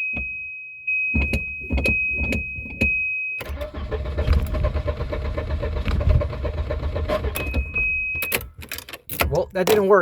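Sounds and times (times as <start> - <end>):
starter cranking engine: 3.5 - 7.6.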